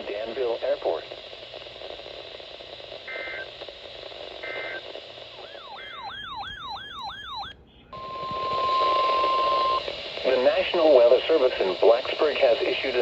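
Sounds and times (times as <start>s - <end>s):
radio hiss: 0.0s - 6.2s, 8.0s - 13.0s
two-tone data bursts: 0.0s - 13.0s
warbling siren alarm tone: 5.4s - 9.9s.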